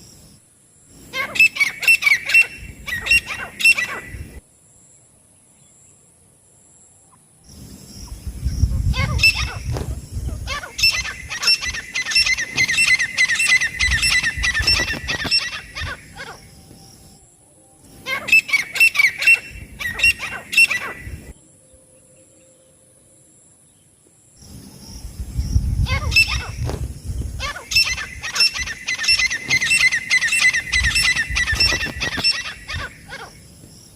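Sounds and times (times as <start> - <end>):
bird calling high notes: 10.4 - 23.2, 27.4 - 33.4.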